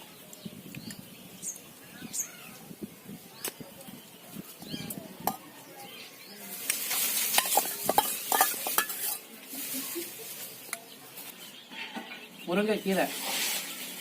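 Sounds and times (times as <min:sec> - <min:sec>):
metal ladle scraping a pot: 0:07.3 - 0:09.3
ladle clinking against pot: 0:07.4 - 0:09.2.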